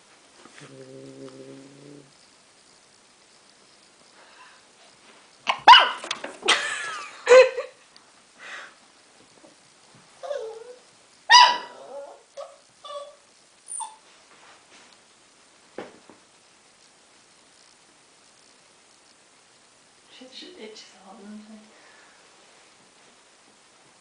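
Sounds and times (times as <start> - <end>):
puppy barking and yapping: 5.5 - 6.2, 10.2 - 14.0.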